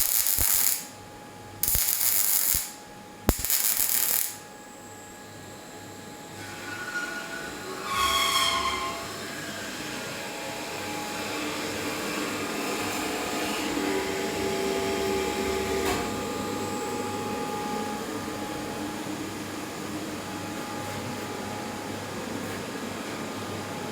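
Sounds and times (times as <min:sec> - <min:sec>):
steady machine hiss: 0:00.0 - 0:01.0, 0:01.6 - 0:04.4
falling machine whine: 0:05.3 - 0:22.4.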